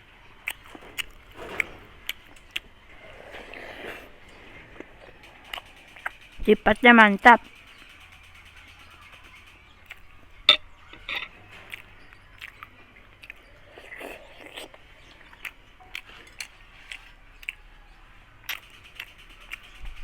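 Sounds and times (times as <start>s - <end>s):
person chewing food: 2.0s - 6.1s, 11.7s - 17.6s.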